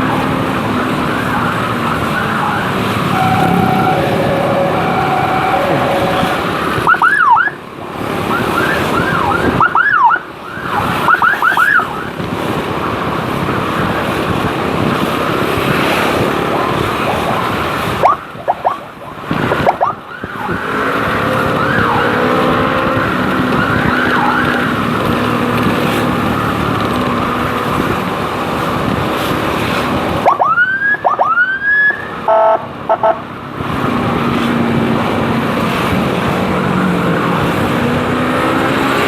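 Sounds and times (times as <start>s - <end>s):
motorcycle motor: 0.0s - 7.5s
wind noise: 0.0s - 30.4s, 32.0s - 39.0s
electronic siren whoops: 1.0s - 7.6s, 18.0s - 22.3s, 22.9s - 24.9s.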